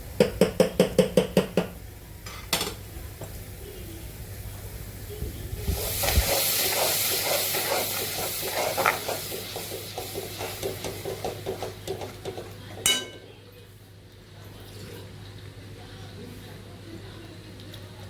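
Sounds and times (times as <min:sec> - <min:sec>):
food sizzling in hot oil: 0:03.3 - 0:13.2.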